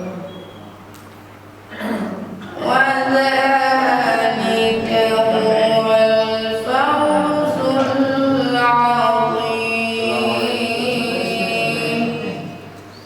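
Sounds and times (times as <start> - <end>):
man chanting melodically: 2.6 - 12.7.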